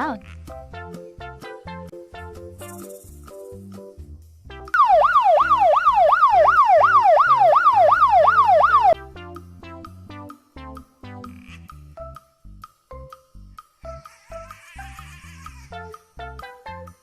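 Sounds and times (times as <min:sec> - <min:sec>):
light background music: 0:00.0 - 0:17.0
emergency siren wailing: 0:04.8 - 0:09.0.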